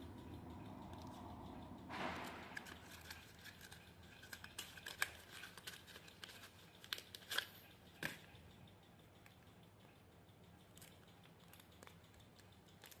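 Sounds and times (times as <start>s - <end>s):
paper crinkling and clicks: 1.9s - 8.4s, 10.6s - 13.0s.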